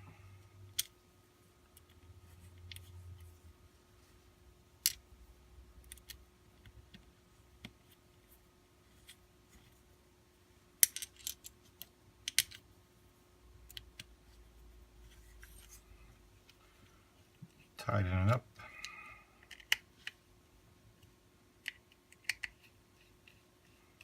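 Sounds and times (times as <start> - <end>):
faint steady hum: 0.0 - 24.0
plastic parts clicking: 10.8 - 12.6, 18.8 - 20.2, 21.6 - 23.4.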